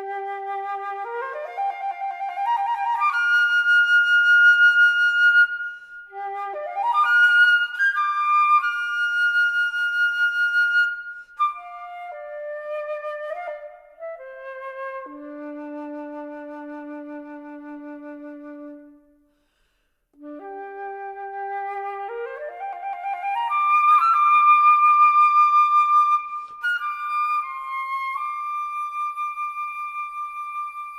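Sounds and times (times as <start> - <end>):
solo flute playing: 0.0 - 19.3, 20.2 - 30.9.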